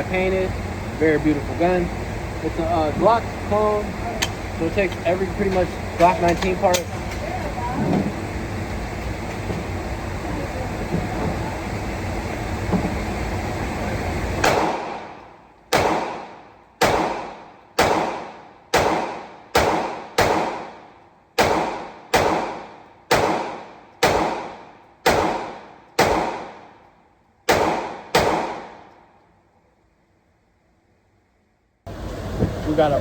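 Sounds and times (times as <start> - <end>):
steady rumble: 0.0 - 29.4, 31.9 - 33.0
pistol shots ringing: 14.4 - 20.8, 21.4 - 26.8, 27.5 - 28.9.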